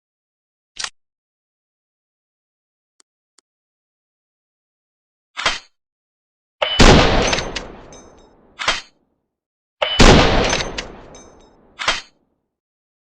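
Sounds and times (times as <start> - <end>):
pistol shots: 6.6 - 8.8, 9.8 - 12.1.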